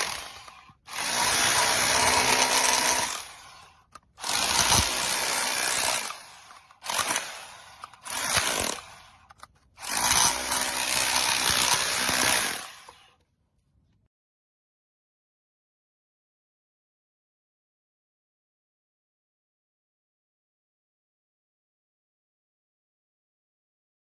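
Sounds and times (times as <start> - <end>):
rotary hammer drill running: 0.0 - 13.2.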